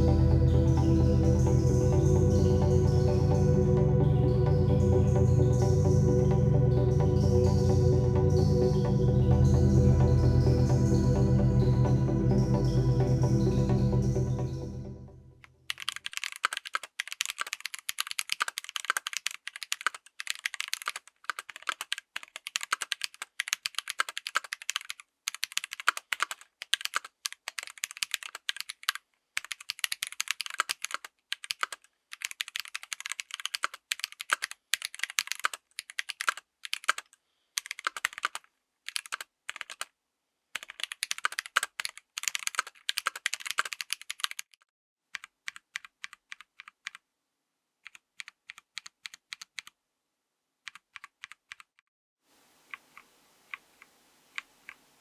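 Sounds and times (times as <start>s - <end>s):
fast typing on mechanical keyboard: 15.7s - 39.9s, 40.6s - 47.0s, 47.8s - 49.8s, 50.7s - 51.8s.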